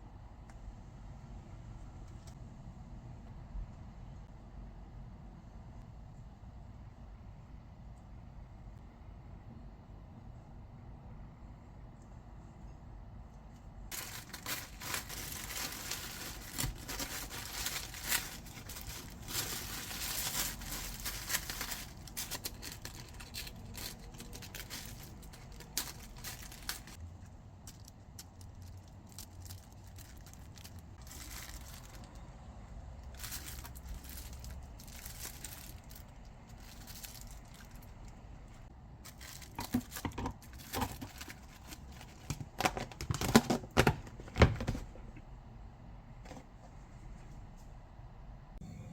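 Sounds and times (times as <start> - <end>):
packaging rustling and crinkling: 13.9 - 27.0, 27.6 - 32.2, 33.0 - 38.2, 39.0 - 44.9.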